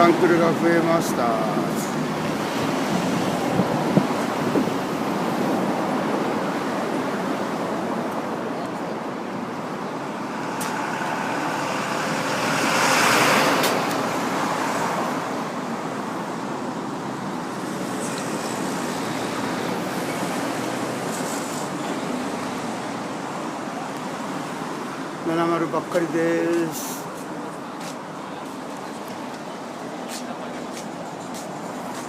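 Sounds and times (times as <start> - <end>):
road traffic noise: 0.0 - 32.0
vehicle passing by: 10.1 - 15.6.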